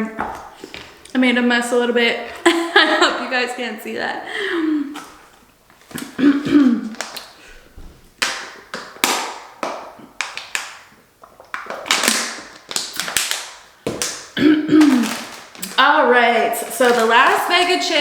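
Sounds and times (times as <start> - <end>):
objects crackling and tapping: 6.9 - 7.4, 8.2 - 15.8, 16.6 - 18.0.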